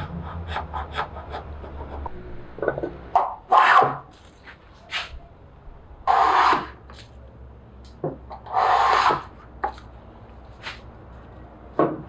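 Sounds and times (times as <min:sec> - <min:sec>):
hand tool scraping wooden board: 0:03.5 - 0:05.2, 0:06.1 - 0:07.0, 0:08.4 - 0:09.8.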